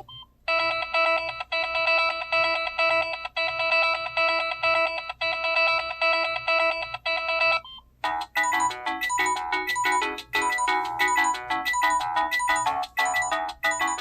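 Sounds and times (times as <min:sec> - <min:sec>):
phone chiming melody: 0:08.0 - 0:14.0
phone alarm beeping: 0:08.4 - 0:14.0.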